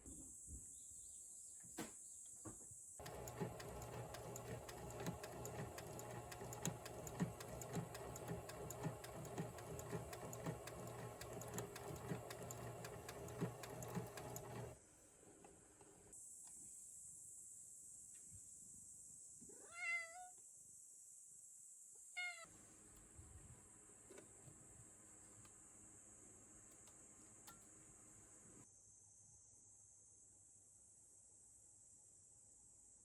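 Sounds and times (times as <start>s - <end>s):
sewing machine stitching: 3.0s - 14.8s.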